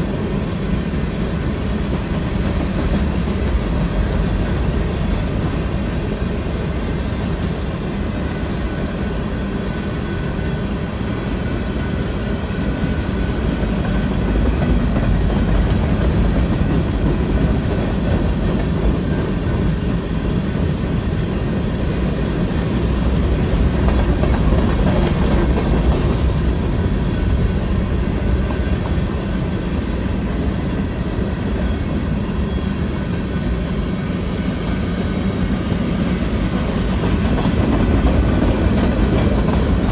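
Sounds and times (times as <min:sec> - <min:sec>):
train rumbling past: 0:00.0 - 0:39.9.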